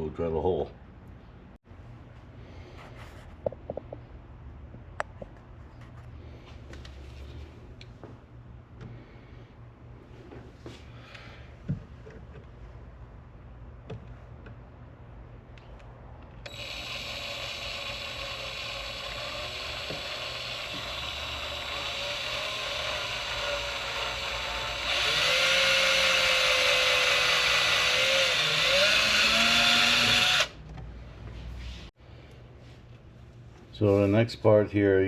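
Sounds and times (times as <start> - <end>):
power drill boring a hole: 16.5 - 30.6.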